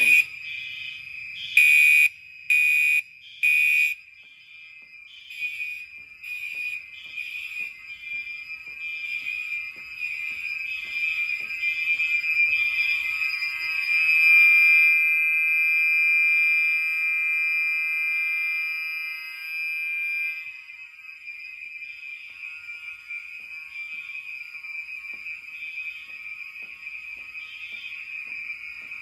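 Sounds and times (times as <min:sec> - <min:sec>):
continuous horn tone: 0:00.0 - 0:00.3, 0:01.6 - 0:04.0
pulsing fire alarm horns: 0:00.0 - 0:29.0.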